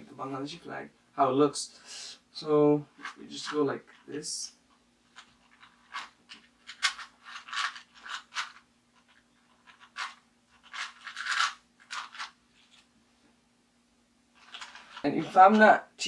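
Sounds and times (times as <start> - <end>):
puzzle cube twisting clicks: 5.2 - 8.6, 9.6 - 12.3.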